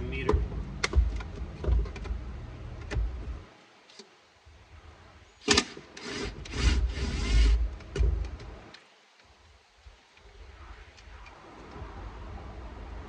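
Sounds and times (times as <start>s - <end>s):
scraping rubbing strokes: 6.0s - 7.6s.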